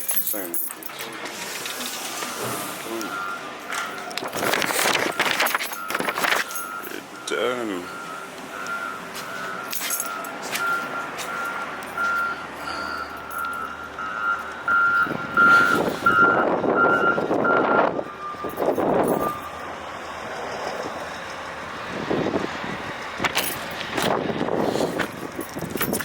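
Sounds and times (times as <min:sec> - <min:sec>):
rushing vehicle noise: 0:00.0 - 0:26.0
vehicle electronic beeper: 0:02.8 - 0:19.6.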